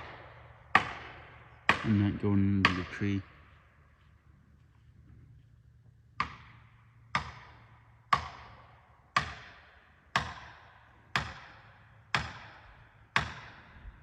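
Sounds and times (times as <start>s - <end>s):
hammer striking metal wedge: 0.7s - 3.1s, 7.2s - 13.6s.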